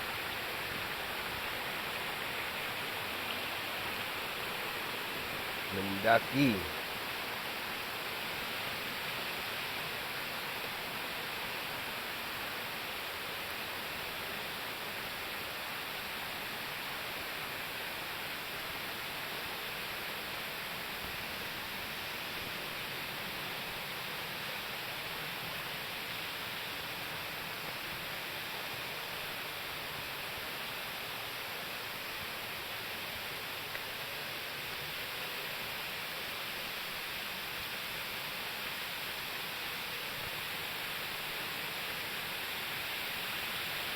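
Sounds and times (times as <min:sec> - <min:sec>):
waterfall rushing: 0:04.6 - 0:06.8.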